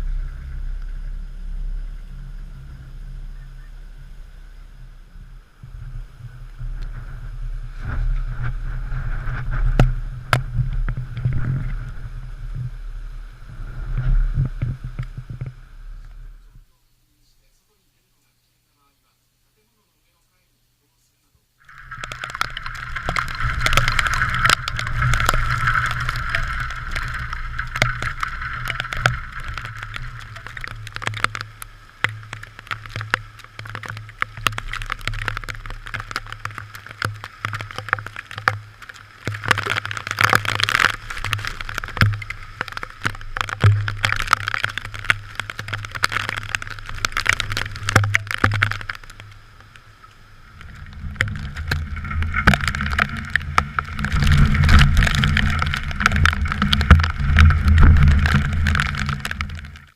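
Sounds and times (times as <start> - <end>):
wind gusting on microphone: 0.0 - 16.6
rain ticks: 0.0 - 16.8, 21.6 - 59.9.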